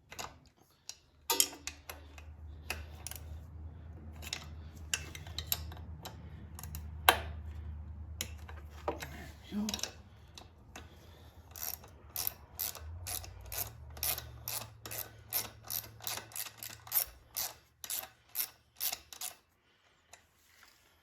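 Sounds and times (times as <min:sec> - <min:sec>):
ratchet wrench clicking: 0:04.2 - 0:07.4, 0:09.7 - 0:19.4.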